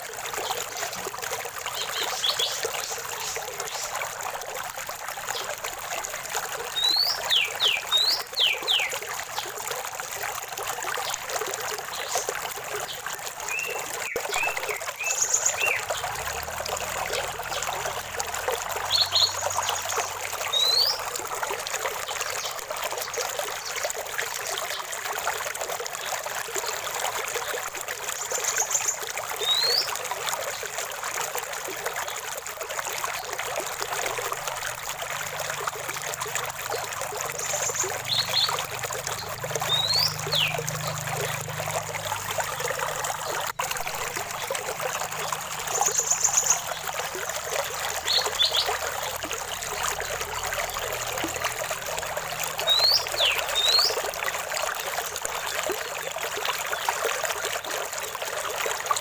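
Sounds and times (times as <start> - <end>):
stream trickling and splashing: 0.0 - 59.0
bird calling: 37.4 - 41.4.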